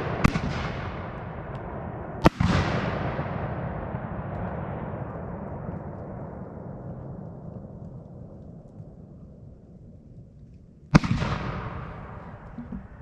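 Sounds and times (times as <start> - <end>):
firework shell bursting: 11.0 - 13.0.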